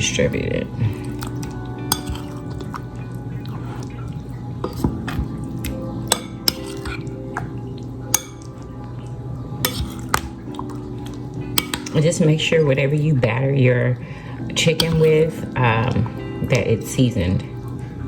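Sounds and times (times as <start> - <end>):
background music: 0.0 - 18.0
utensil clinking against bowl: 1.0 - 2.8, 4.6 - 7.5, 8.1 - 8.7, 9.6 - 12.2, 14.7 - 15.3.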